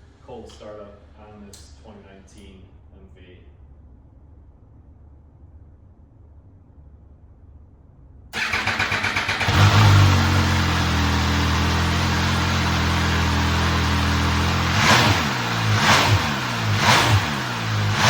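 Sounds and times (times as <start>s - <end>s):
starter motor cranking: 8.4s - 10.6s
motorcycle engine idling: 8.4s - 14.7s.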